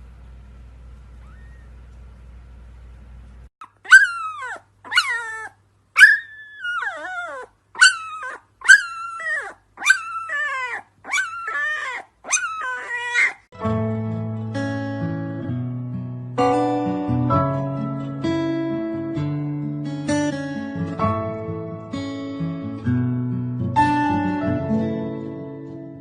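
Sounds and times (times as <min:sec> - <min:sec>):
dog yelping: 0:01.2 - 0:01.7, 0:03.6 - 0:13.5.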